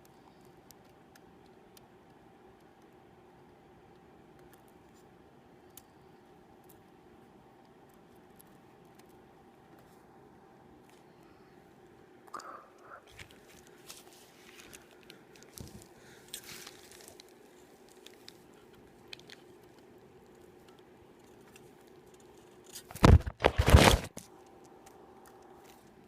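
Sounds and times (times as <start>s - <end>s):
aluminium foil crinkling and tearing: 13.1s - 26.0s
foil rustling and crunching: 13.2s - 18.4s, 22.7s - 24.2s.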